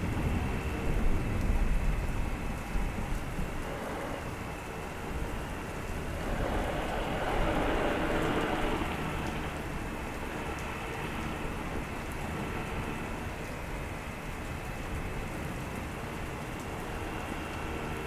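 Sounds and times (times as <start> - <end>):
heavy rain: 0.0 - 18.0
thunder rumble: 0.0 - 18.0.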